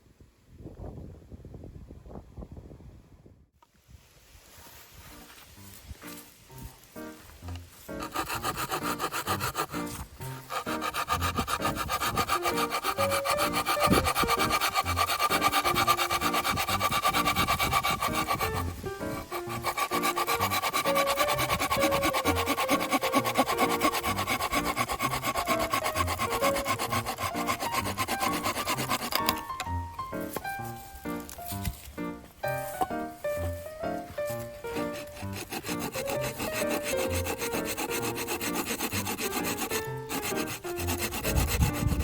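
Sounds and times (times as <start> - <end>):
background music: 5.6 - 42.0
hand saw cutting wood: 7.4 - 30.5, 32.5 - 42.0.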